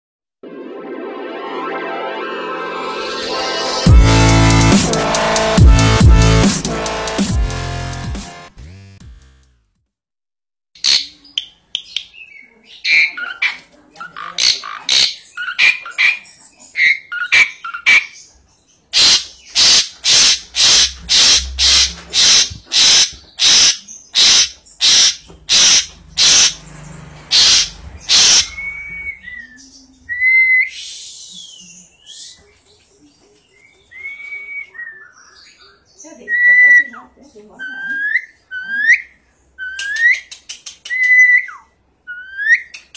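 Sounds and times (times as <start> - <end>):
harsh bird calls: 10.8 - 42.9
starling chirps and whistles: 19.0 - 26.7, 27.3 - 32.4.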